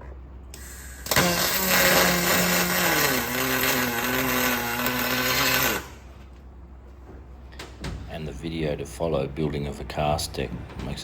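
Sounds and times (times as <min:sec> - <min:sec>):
welding arc buzzing hiss: 0:00.5 - 0:06.2.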